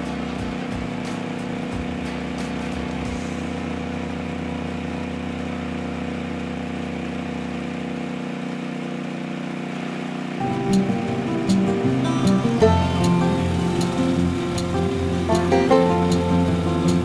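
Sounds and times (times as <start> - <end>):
sawmill engine droning hum: 3.4 - 17.0.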